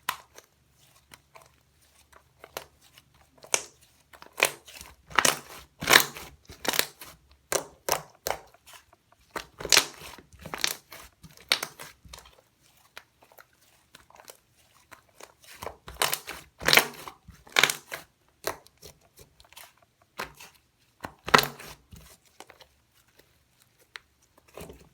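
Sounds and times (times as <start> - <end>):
slime crackling and popping: 3.4 - 12.3, 15.5 - 18.7, 20.2 - 21.7.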